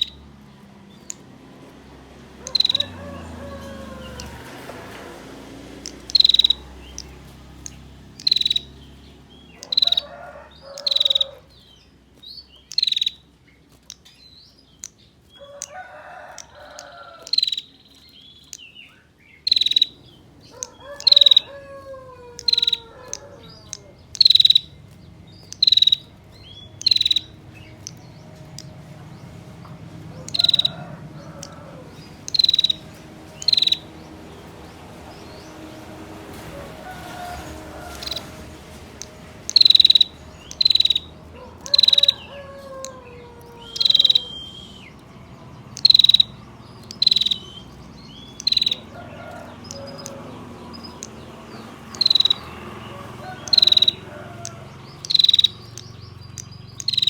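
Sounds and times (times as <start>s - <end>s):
high-pitched trilling bird call: 0.0s - 0.2s, 2.4s - 2.9s, 5.8s - 9.0s, 9.6s - 10.1s, 10.8s - 11.4s, 12.6s - 13.3s, 17.2s - 21.6s, 22.4s - 24.8s, 25.4s - 28.7s, 30.2s - 30.7s, 32.2s - 33.9s, 37.9s - 38.4s, 39.0s - 45.1s, 45.7s - 48.9s, 51.9s - 52.5s, 53.4s - 54.0s, 55.0s - 57.0s
faint lower bird chirps: 6.0s - 8.8s, 12.5s - 13.2s, 17.2s - 21.5s, 22.4s - 22.8s, 23.6s - 24.8s, 25.4s - 28.0s, 33.4s - 33.8s, 39.5s - 41.1s, 43.7s - 44.9s, 45.7s - 48.8s, 55.0s - 57.0s.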